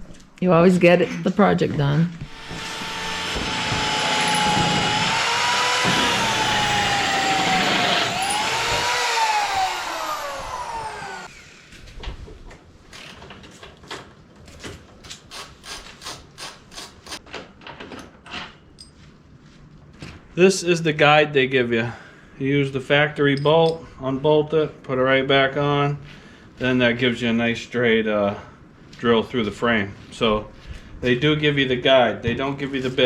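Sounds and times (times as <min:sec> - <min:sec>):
power drill whining: 0:02.2 - 0:11.8.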